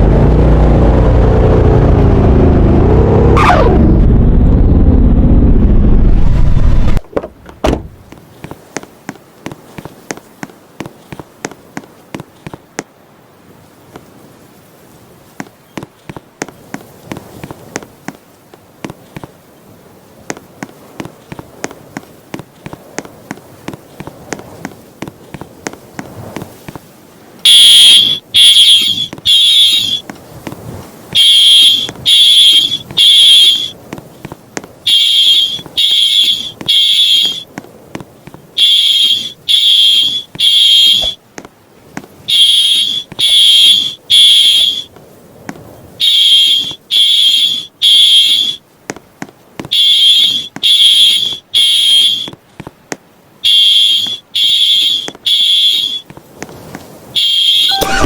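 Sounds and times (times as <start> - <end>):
fire alarm horn beeps: 27.5 - 30.0, 31.2 - 33.7, 34.9 - 37.4, 38.6 - 41.2, 42.3 - 44.9, 46.0 - 48.6, 49.7 - 52.3, 53.4 - 56.0, 57.2 - 58.0.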